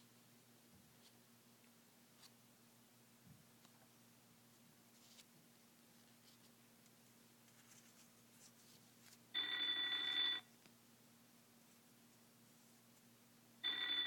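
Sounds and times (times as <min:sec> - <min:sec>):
alarm clock electronic ringing: 0:09.4 - 0:10.5, 0:13.6 - 0:14.0.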